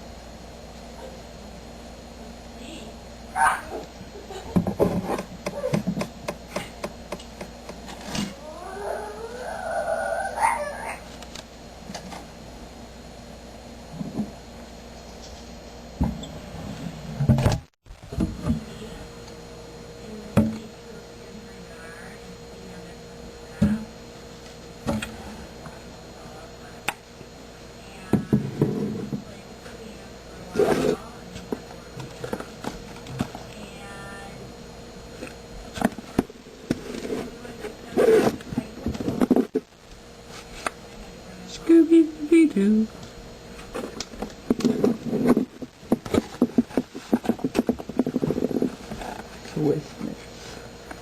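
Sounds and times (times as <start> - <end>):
faint steady hum: 0.0 - 51.0.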